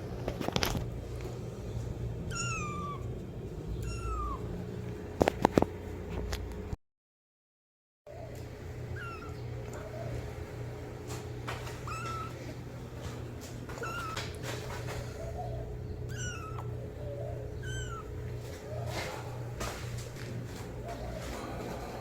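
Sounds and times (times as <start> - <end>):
steady low hum: 0.0 - 6.8, 8.1 - 22.0
kitten meowing: 2.3 - 3.1, 3.7 - 4.5, 9.0 - 9.4, 11.8 - 12.4, 13.8 - 14.2, 16.1 - 18.1.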